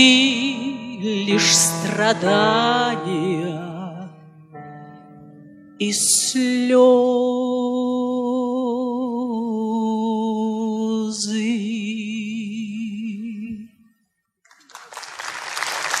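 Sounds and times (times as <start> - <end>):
piano: 0.0 - 13.7
audience applause: 14.5 - 16.0.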